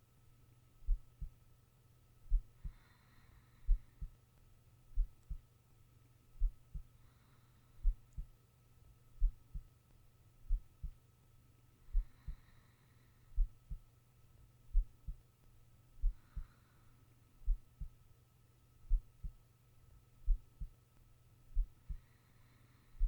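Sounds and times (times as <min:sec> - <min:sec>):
steady low hum: 0:00.0 - 0:23.0
heartbeat thumps: 0:00.9 - 0:01.4, 0:02.3 - 0:02.8, 0:03.7 - 0:04.1, 0:05.0 - 0:05.4, 0:06.4 - 0:06.9, 0:07.8 - 0:08.3, 0:09.2 - 0:09.7, 0:10.5 - 0:11.0, 0:11.9 - 0:12.4, 0:13.4 - 0:13.8, 0:14.7 - 0:15.2, 0:16.0 - 0:16.5, 0:17.4 - 0:18.0, 0:18.9 - 0:19.4, 0:20.2 - 0:20.7, 0:21.5 - 0:22.0
faint breaths: 0:02.3 - 0:04.3, 0:06.4 - 0:08.4, 0:11.7 - 0:13.9, 0:16.0 - 0:18.0, 0:21.6 - 0:23.0.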